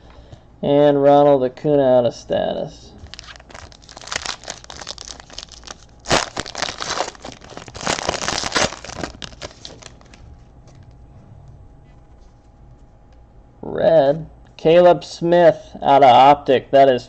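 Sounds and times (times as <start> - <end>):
foil wrapper tearing and crinkling: 3.1 - 10.2.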